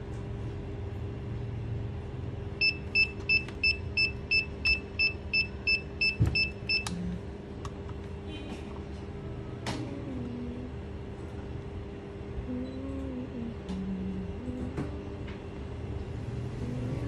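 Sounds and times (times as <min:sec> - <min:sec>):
steady low hum: 0:00.0 - 0:17.0
electronic device beeping: 0:02.6 - 0:06.9.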